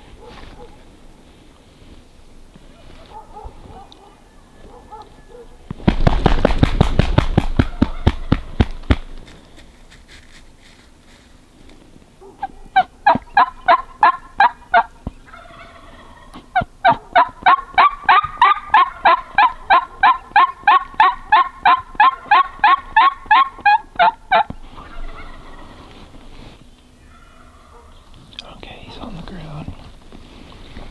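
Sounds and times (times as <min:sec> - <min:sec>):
wild turkey rattling call: 0:03.9 - 0:11.1, 0:12.1 - 0:28.4
wild turkey yelps: 0:07.4 - 0:08.8, 0:12.2 - 0:26.0, 0:26.9 - 0:28.2.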